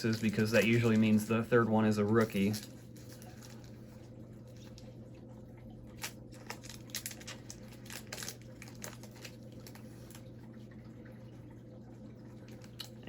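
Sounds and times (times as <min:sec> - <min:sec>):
steady low hum: 0:00.0 - 0:13.0
foil wrapper tearing and crinkling: 0:06.0 - 0:10.2.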